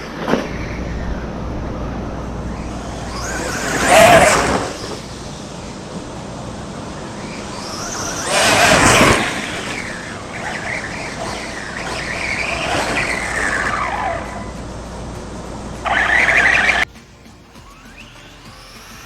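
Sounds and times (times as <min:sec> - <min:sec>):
rc car electric motor whining: 0:00.0 - 0:19.0.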